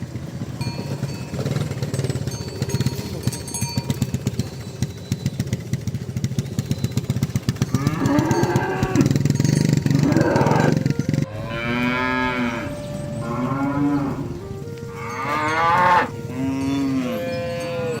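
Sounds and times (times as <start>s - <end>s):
cattle mooing: 7.6s - 18.0s.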